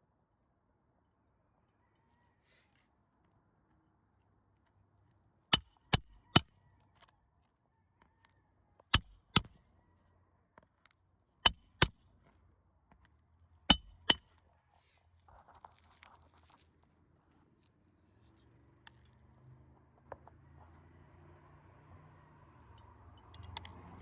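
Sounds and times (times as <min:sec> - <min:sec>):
hammer striking metal: 0:05.6 - 0:06.4, 0:09.0 - 0:09.5, 0:11.5 - 0:11.9, 0:13.7 - 0:14.2, 0:23.2 - 0:23.7.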